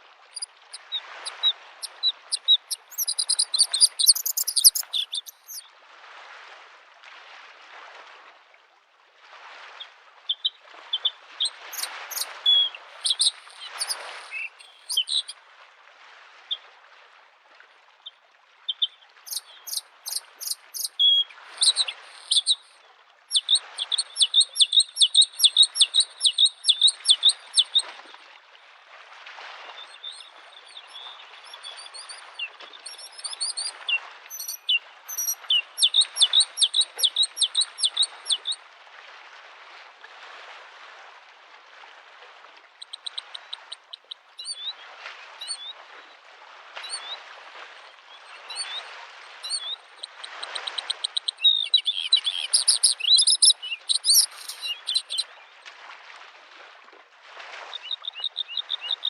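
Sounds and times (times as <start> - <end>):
small waves washing on shore: 0.0 - 59.0
bird singing high notes: 51.3 - 55.2.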